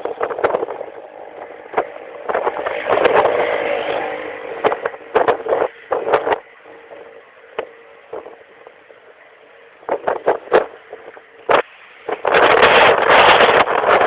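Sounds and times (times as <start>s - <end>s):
wind on microphone: 0.0s - 14.0s
rain: 10.8s - 14.0s.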